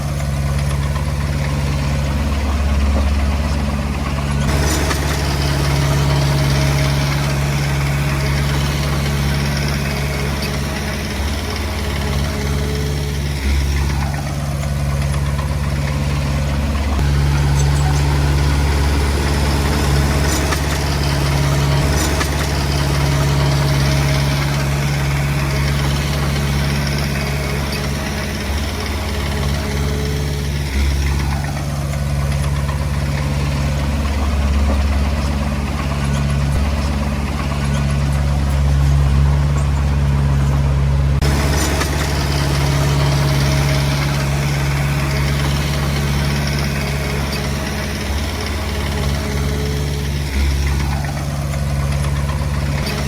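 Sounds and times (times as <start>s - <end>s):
bulldozer diesel engine working: 0.0s - 53.0s.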